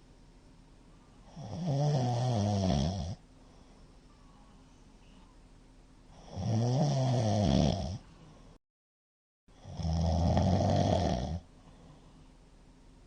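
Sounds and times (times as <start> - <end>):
man snoring loudly: 1.4 - 3.2, 6.2 - 8.0, 9.6 - 11.4.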